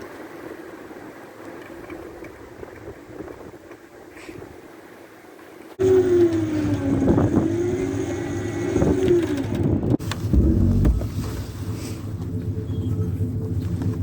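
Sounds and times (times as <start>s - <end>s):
electric winch motor whine: 5.8s - 10.0s
engine hum: 5.8s - 14.0s.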